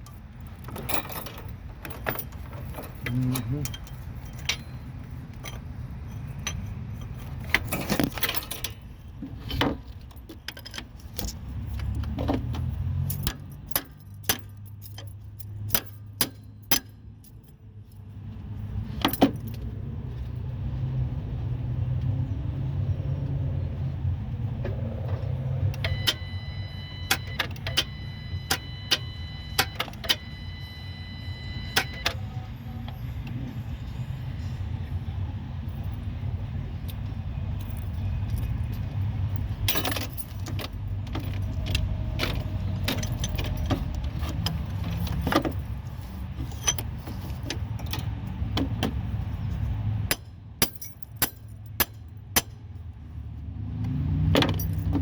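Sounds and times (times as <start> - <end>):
metallic clicks and jingles: 0.0 - 20.4, 35.6 - 53.0, 53.8 - 55.0
car warning chime dinging: 25.8 - 33.1.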